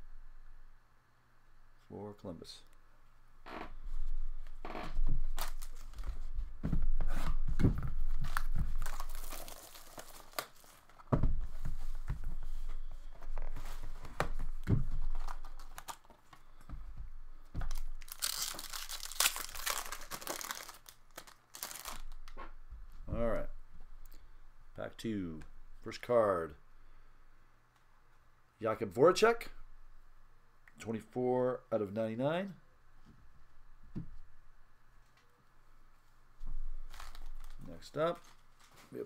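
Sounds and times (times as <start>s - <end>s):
packaging tearing and crinkling: 5.4s - 6.0s, 8.1s - 11.0s, 15.0s - 16.1s, 17.6s - 22.4s, 36.9s - 38.8s.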